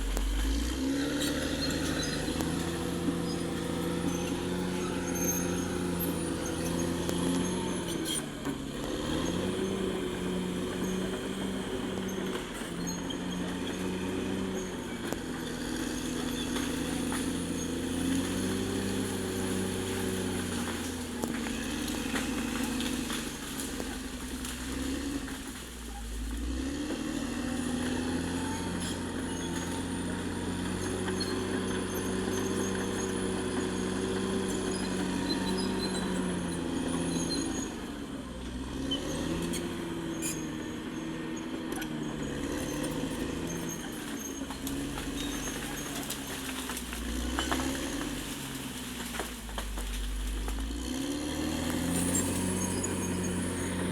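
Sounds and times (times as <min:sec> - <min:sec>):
bulldozer diesel engine under load: 0:00.0 - 0:53.9.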